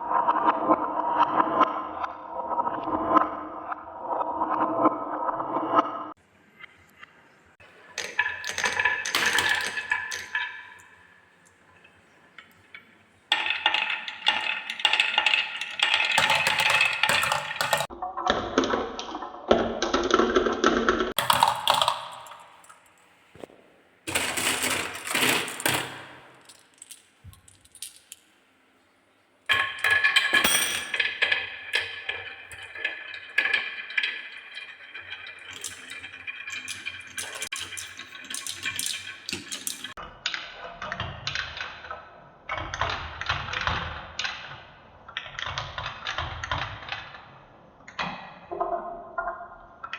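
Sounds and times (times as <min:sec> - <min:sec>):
marbles rolling down wooden tracks: 0:07.7 - 0:11.0, 0:13.3 - 0:17.9, 0:19.6 - 0:22.7, 0:24.1 - 0:28.2, 0:29.5 - 0:40.0.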